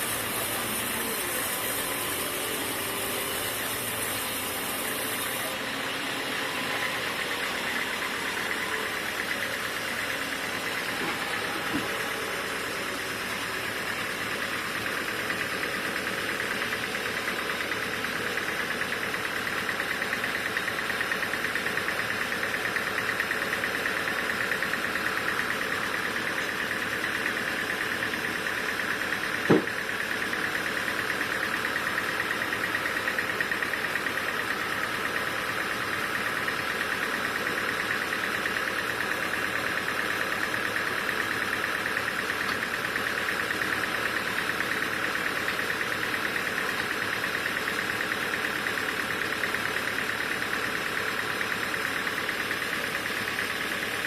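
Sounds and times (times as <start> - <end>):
sawmill machinery drone: 0.0 - 54.0
sharp knock: 29.5 - 29.7.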